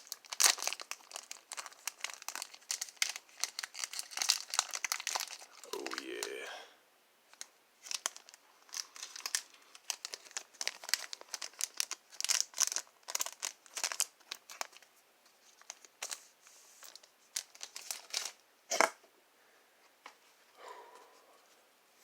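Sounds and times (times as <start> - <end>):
wrapper tearing and crinkling: 0.0 - 6.4, 7.4 - 14.8, 16.8 - 18.8.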